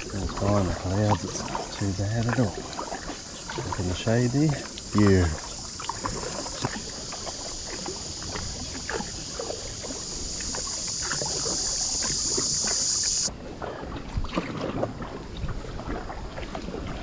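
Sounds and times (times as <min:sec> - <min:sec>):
kayak paddle strokes in water: 0:00.0 - 0:17.0
high steady buzz: 0:09.6 - 0:13.3.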